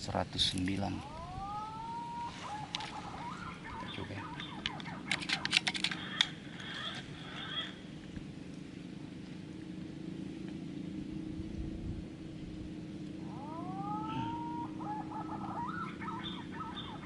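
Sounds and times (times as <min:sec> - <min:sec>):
steady low hum: 0:00.0 - 0:17.0
bird whistled calls: 0:01.0 - 0:07.7, 0:13.3 - 0:17.0
sharp clicks: 0:03.6 - 0:07.0.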